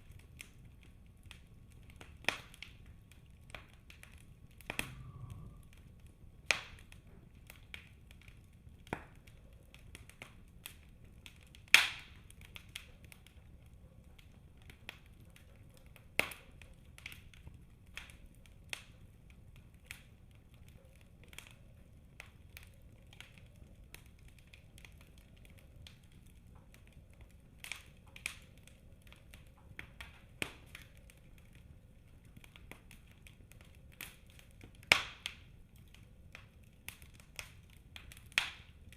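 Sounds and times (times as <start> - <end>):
faint low rumble: 0.0 - 38.9
wood fire crackling and popping: 0.0 - 38.9.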